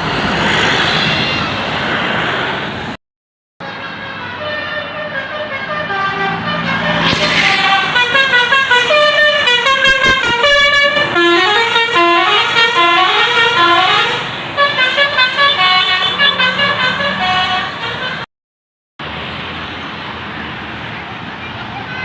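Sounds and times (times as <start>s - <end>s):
musical air horn playing a tune: 3.6s - 18.2s.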